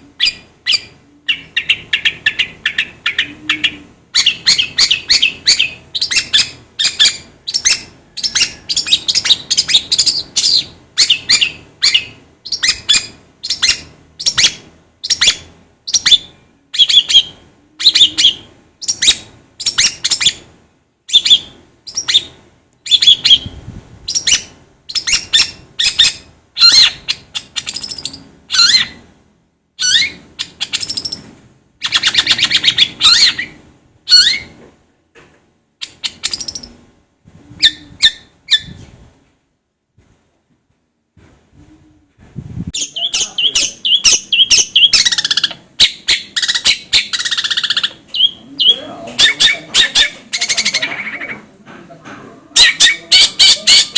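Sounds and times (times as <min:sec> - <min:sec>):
bird chattering notes: 0:42.8 - 0:51.5.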